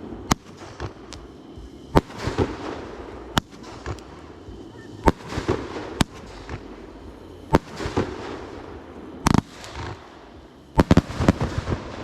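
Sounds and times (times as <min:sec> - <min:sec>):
fireworks bangs: 0:01.9 - 0:06.8, 0:07.5 - 0:12.0.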